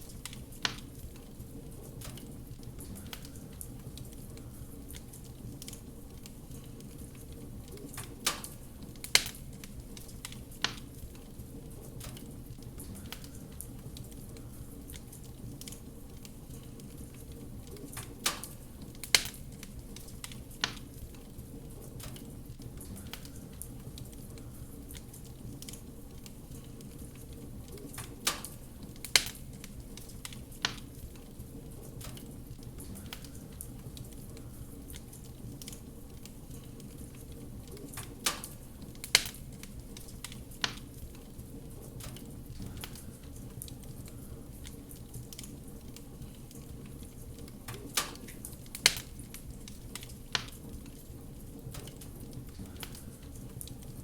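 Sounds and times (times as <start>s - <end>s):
wood fire crackling: 0.0s - 54.0s
sharp pops: 47.7s - 49.2s.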